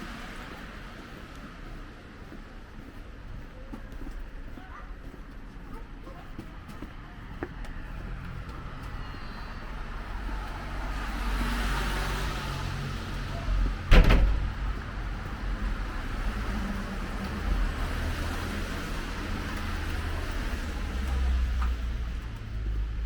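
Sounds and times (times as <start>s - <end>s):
low traffic rumble: 0.0s - 23.0s
car passing: 7.3s - 23.0s
sudden thump: 13.9s - 14.8s.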